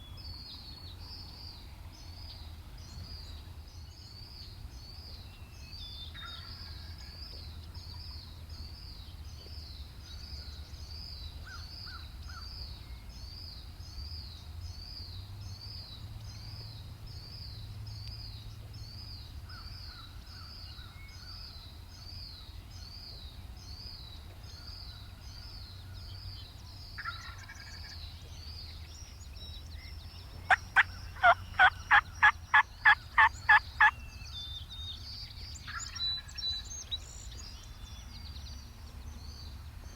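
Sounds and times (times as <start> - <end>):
wild turkey calling: 27.0 - 27.9, 30.5 - 33.9.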